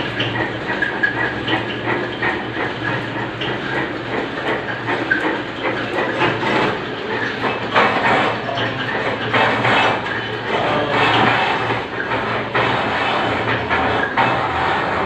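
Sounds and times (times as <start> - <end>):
bandsaw motor hum: 6.4 - 15.0.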